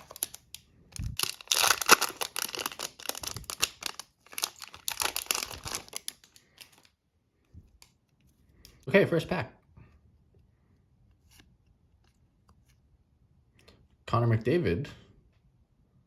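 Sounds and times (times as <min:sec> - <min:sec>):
wrapper crinkling and tearing: 0:00.0 - 0:06.9.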